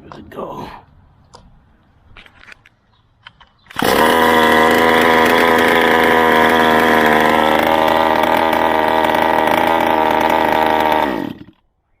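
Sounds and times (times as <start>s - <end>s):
small petrol engine starting and running: 3.7s - 11.6s.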